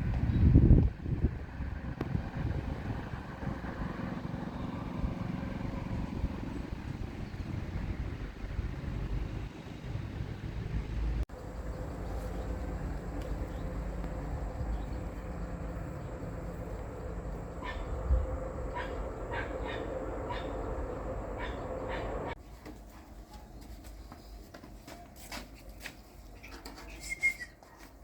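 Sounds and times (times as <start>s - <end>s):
low rumble: 0.0s - 22.4s
dog barking: 17.6s - 18.0s, 18.7s - 20.7s, 21.4s - 22.4s.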